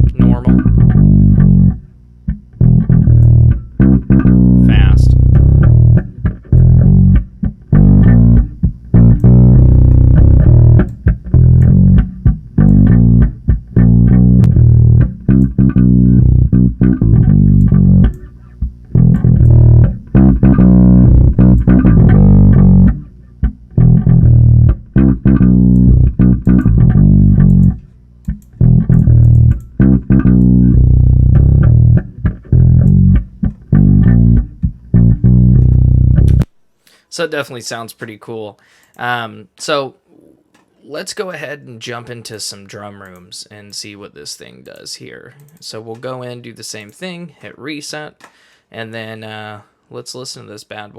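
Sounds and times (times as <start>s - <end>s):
electric bass guitar riff: 0.0s - 36.6s.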